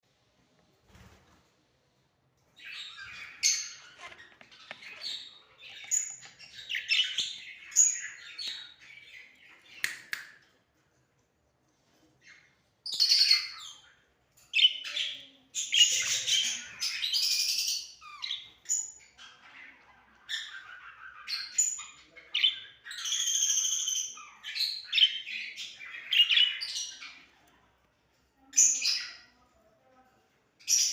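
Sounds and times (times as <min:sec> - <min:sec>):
lovebirds chirping and squawking: 0:02.5 - 0:10.4, 0:12.0 - 0:27.6, 0:28.2 - 0:29.4, 0:30.6 - 0:30.9.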